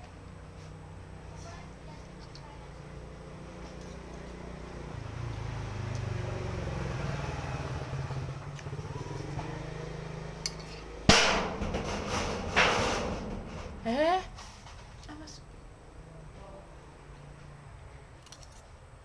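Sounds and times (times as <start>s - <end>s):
passing vehicle engine hum: 0.0s - 19.0s
sudden loud knock: 11.1s - 15.0s.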